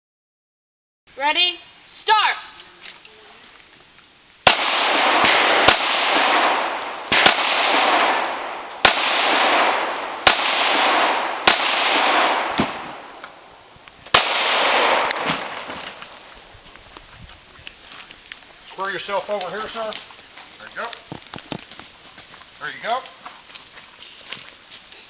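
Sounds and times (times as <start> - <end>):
pistol shots with echo: 4.5 - 13.2, 14.1 - 16.0.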